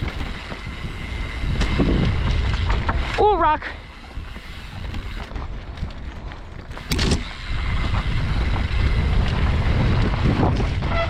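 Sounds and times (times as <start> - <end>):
mountain bike rattling on rocks: 0.0 - 11.0
wind rushing over microphone: 0.0 - 11.0
sharp clatter: 6.7 - 8.8.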